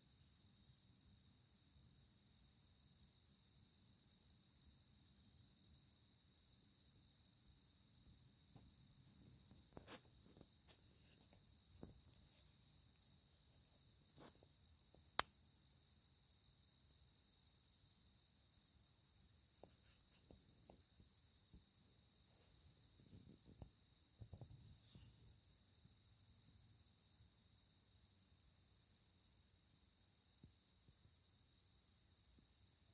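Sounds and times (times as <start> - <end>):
insects trilling: 0.0 - 32.9
faint rustles and ticks: 8.2 - 15.3, 19.5 - 21.7, 22.3 - 25.4.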